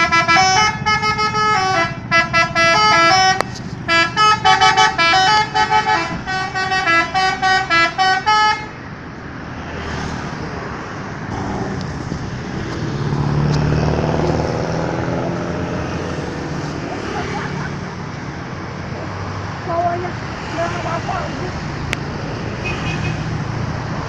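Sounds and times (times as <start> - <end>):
multi-tone musical bus horn: 0.0 - 8.8, 22.6 - 23.4
bus engine: 0.0 - 24.0
road noise: 0.0 - 24.0.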